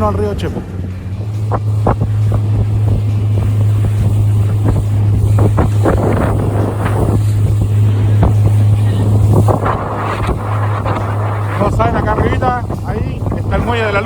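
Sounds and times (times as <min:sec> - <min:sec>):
boat motor droning: 0:00.0 - 0:14.0
bursts of wind and water noise: 0:00.0 - 0:14.0
wind buffeting microphone: 0:00.0 - 0:14.0.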